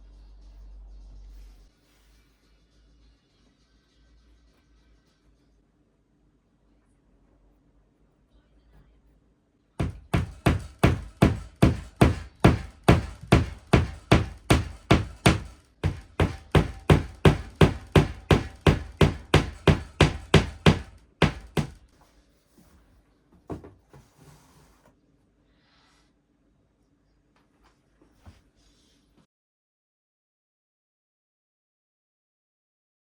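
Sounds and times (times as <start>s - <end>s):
hammer striking a nail: 9.8s - 21.9s.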